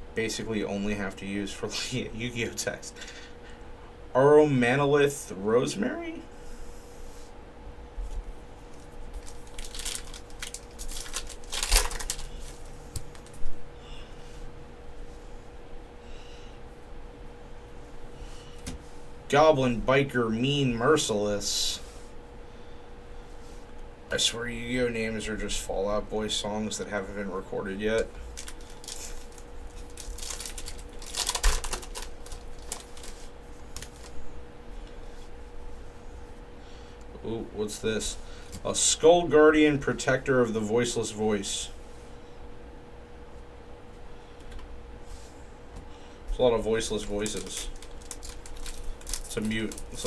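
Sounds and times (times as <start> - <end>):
faint steady hum: 0.0 - 50.0
trading cards rustling: 8.7 - 13.4, 27.9 - 34.2, 46.8 - 50.0.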